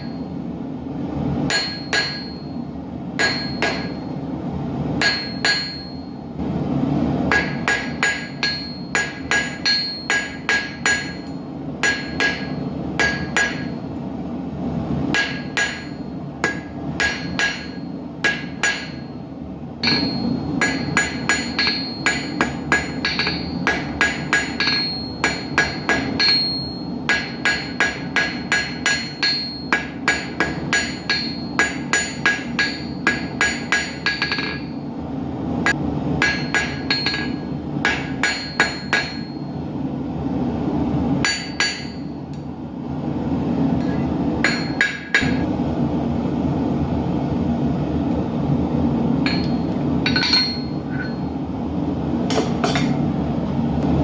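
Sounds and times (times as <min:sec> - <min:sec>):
hammer striking steel on anvil: 0:00.0 - 0:00.3, 0:01.4 - 0:04.2, 0:05.0 - 0:06.2, 0:07.3 - 0:13.8, 0:15.1 - 0:19.2, 0:19.8 - 0:34.8, 0:35.6 - 0:39.6, 0:41.2 - 0:42.5, 0:43.8 - 0:45.5, 0:49.2 - 0:51.4, 0:52.3 - 0:53.0.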